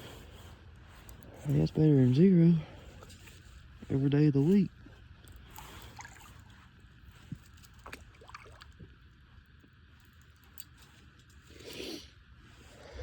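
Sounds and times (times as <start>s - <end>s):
light water sounds: 2.8s - 11.4s.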